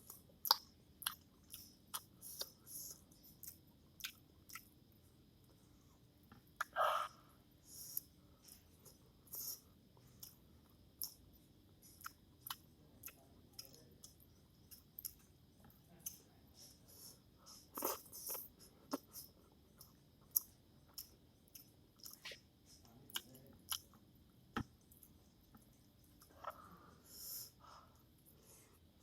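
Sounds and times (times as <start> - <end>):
person chewing noodles: 0.0 - 4.7, 7.8 - 15.4, 16.0 - 24.0.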